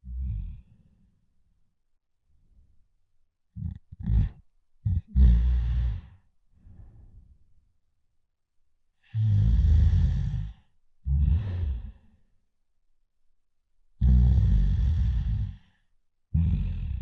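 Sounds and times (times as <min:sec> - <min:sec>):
loud rattling snoring: 0:09.2 - 0:12.0, 0:14.0 - 0:15.7, 0:16.4 - 0:17.0.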